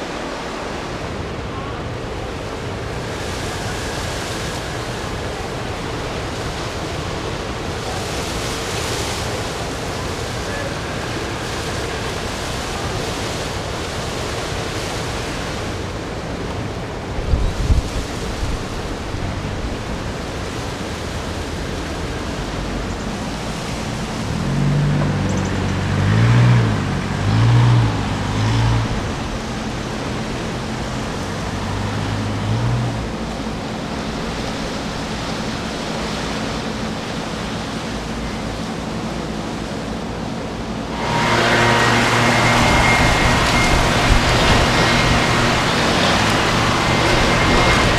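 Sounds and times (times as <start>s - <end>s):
wind and rain rushing: 0.0s - 47.9s
low wavering droning hum: 17.1s - 47.9s.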